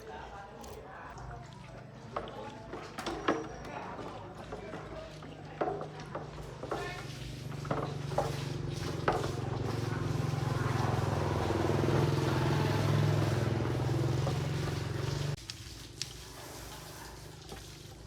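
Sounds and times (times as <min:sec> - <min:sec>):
engine running: 0:07.4 - 0:15.4.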